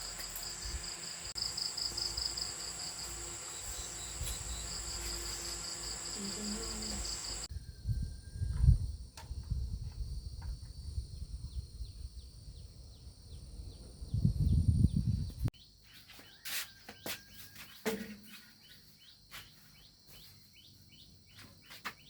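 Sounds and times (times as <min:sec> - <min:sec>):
high insect drone: 0:00.0 - 0:07.7.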